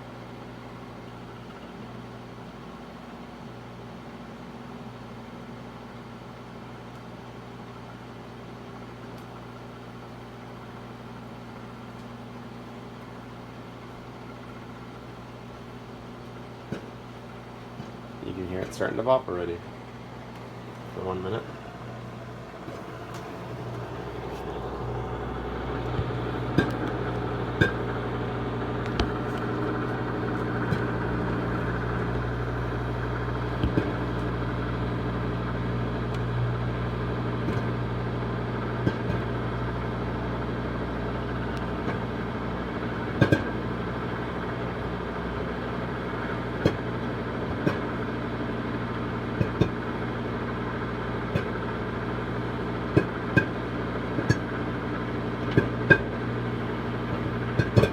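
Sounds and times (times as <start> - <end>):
microwave oven humming: 0.0 - 57.9
popcorn kernels popping: 22.6 - 35.3, 41.5 - 57.9.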